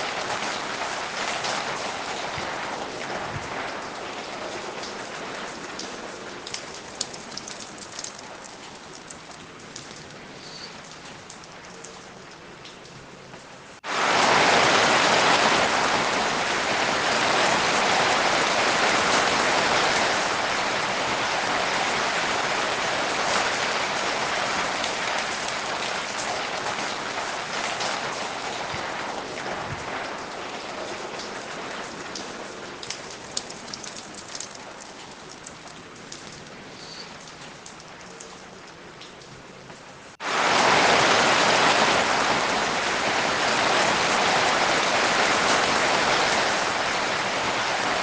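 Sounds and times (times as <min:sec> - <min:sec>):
rain falling: 0:00.0 - 0:48.0
single raindrops ticking: 0:04.8 - 0:13.8, 0:31.2 - 0:40.2.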